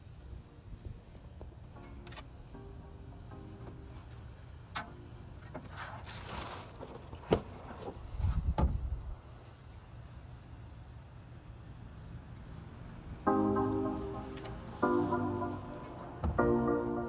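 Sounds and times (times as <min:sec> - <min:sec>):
rustling: 0:05.5 - 0:08.5.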